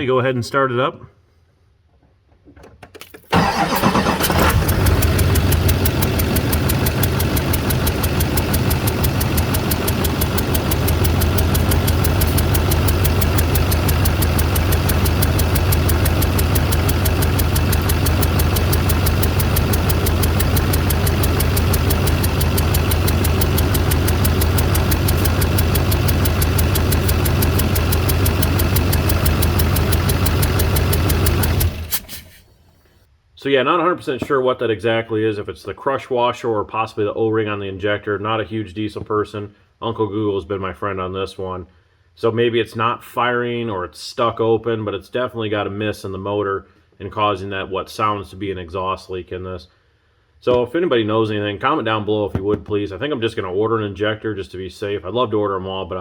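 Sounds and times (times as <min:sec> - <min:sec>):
diesel engine idling: 0:03.3 - 0:32.3
engine ticking and clatter: 0:03.3 - 0:32.3.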